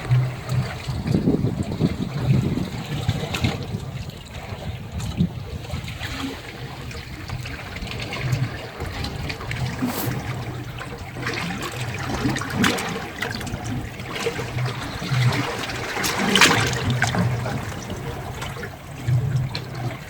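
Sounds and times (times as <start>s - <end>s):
seawater sloshing and splashing: 6.2s - 20.0s.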